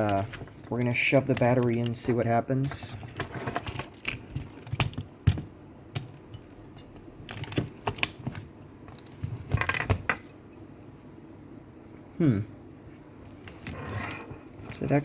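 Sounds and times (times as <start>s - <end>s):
plastic toy clicks and knocks: 0.0s - 6.5s.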